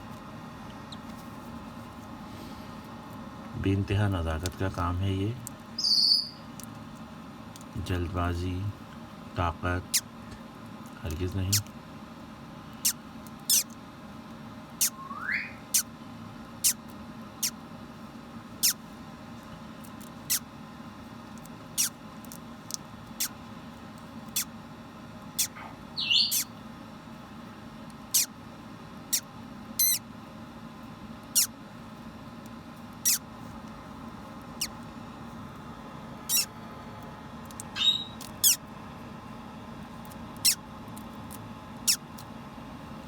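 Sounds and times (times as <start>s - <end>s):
low steady hum: 0.0s - 43.0s
parrot chick peeping: 5.8s - 6.5s, 12.8s - 13.8s, 14.8s - 15.9s, 24.3s - 24.5s, 25.4s - 26.5s, 28.1s - 28.3s, 29.8s - 30.0s, 31.3s - 31.5s, 33.0s - 33.2s, 34.5s - 34.8s, 36.3s - 36.5s, 37.6s - 38.6s.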